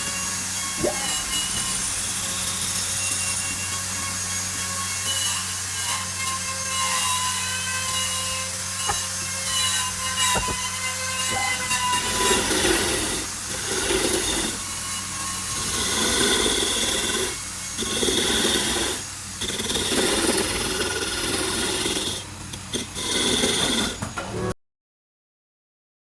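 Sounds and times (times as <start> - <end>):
power tool working wood: 0.0 - 24.6
low motor hum: 22.8 - 24.6.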